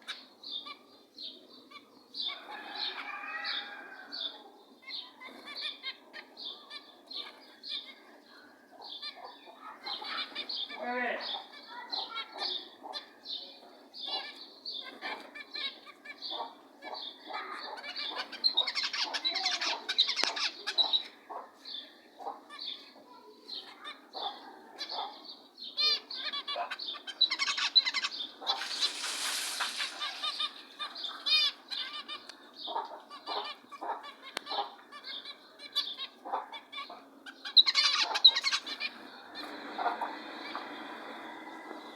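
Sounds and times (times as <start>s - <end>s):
wings fluttering: 28.4s - 31.3s.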